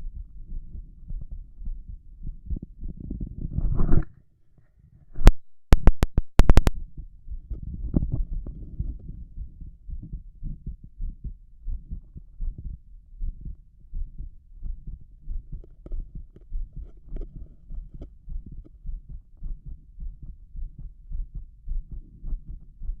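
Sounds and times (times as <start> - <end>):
heartbeat through a stethoscope: 0.0 - 4.1, 5.1 - 23.0
scratchy clicks: 5.2 - 6.8.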